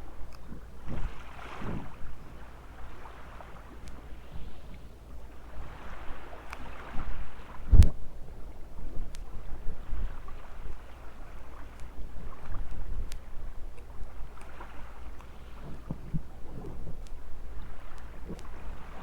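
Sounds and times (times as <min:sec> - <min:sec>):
wind buffeting microphone: 0:00.0 - 0:04.8, 0:05.4 - 0:19.0
waves washing on a beach: 0:00.0 - 0:19.0
dull thump: 0:07.7 - 0:08.0.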